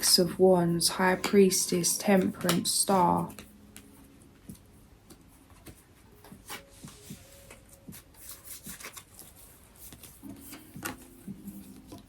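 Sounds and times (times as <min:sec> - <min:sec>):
cards being shuffled: 0:05.1 - 0:12.0.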